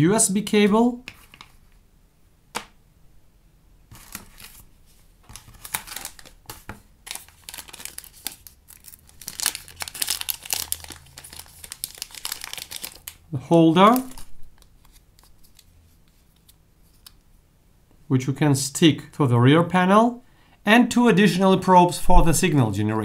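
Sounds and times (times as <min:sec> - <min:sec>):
plastic packaging crinkling and tearing: 0:03.9 - 0:15.8.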